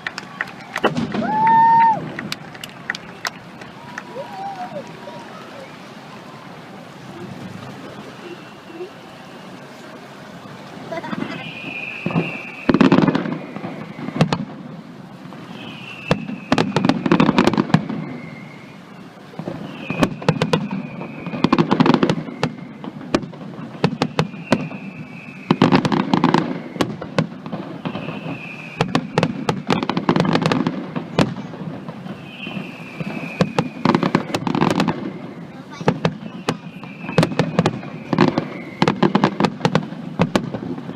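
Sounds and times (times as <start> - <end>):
firework falling whistle: 0.0 - 10.4, 11.0 - 40.9
firework bangs and crackles: 0.0 - 40.9.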